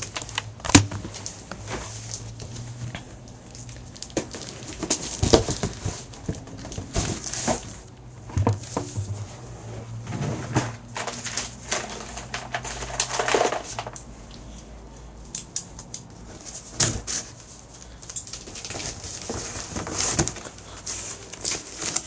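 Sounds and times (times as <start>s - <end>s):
packing tape tearing: 3.5s - 7.7s, 18.0s - 22.0s.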